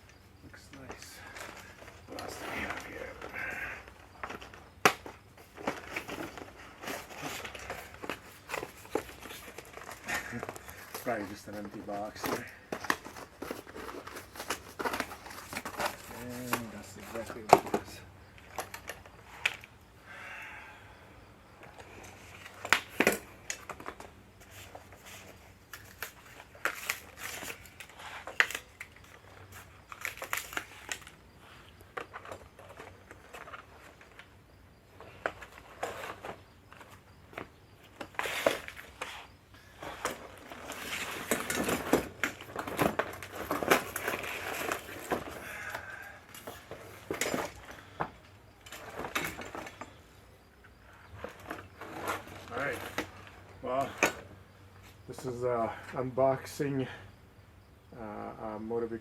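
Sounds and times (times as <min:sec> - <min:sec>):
packaging rustling: 0:04.2 - 0:17.7, 0:22.2 - 0:31.2, 0:35.2 - 0:45.8
cardboard crackling and crinkling: 0:04.2 - 0:19.6, 0:21.8 - 0:34.4, 0:35.0 - 0:48.0.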